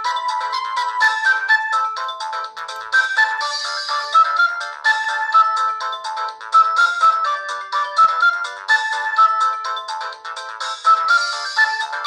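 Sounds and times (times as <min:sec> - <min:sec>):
polyphonic phone ringtone: 0:02.6 - 0:04.1.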